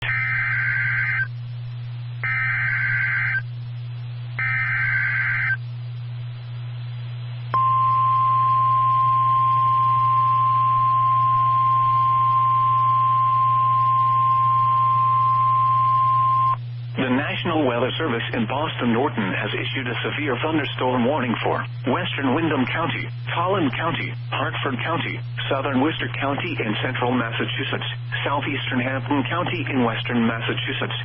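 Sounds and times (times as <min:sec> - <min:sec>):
screechy digital data bursts: 0:00.0 - 0:01.3, 0:02.2 - 0:03.4, 0:04.4 - 0:05.6
steady warning alarm tone: 0:00.0 - 0:01.4, 0:02.2 - 0:03.5, 0:04.4 - 0:05.6, 0:07.6 - 0:16.6
steady low hum: 0:00.0 - 0:31.0.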